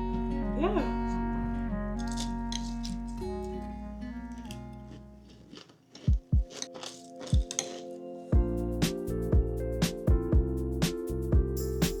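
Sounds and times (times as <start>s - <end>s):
music with steady drum beat: 8.4s - 12.0s.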